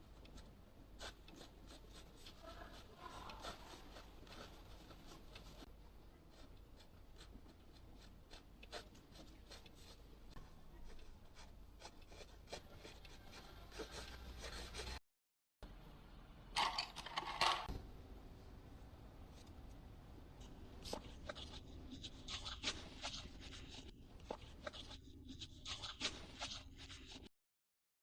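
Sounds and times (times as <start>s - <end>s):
drawing tool scratching on paper: 1.0s - 5.7s, 6.3s - 10.1s, 10.8s - 15.0s, 20.8s - 27.3s.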